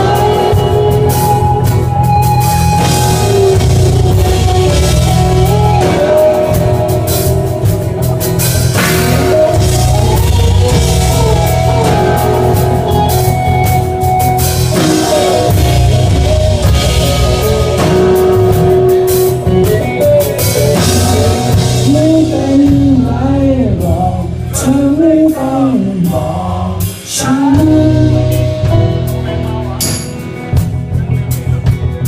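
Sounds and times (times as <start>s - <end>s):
lead melody bending in pitch: 0.0s - 22.6s
bass: 0.0s - 32.0s
drums: 0.0s - 32.0s
electric guitars: 0.0s - 32.0s.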